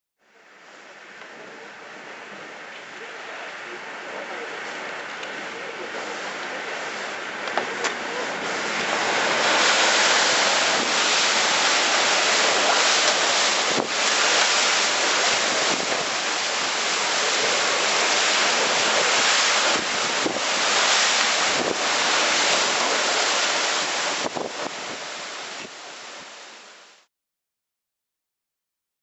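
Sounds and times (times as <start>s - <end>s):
driving rain: 0.2s - 27.1s
wind rushing: 8.0s - 25.7s.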